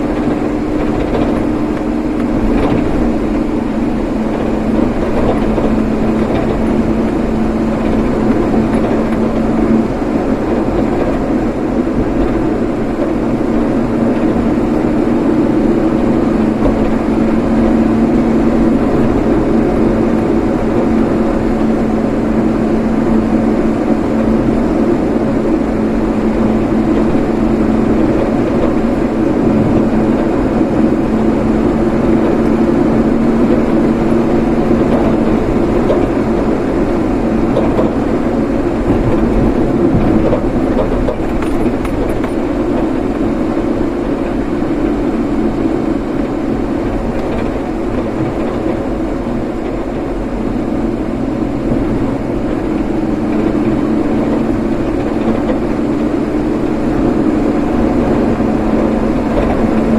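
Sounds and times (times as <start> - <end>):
vehicle engine and road noise: 0.0 - 59.9.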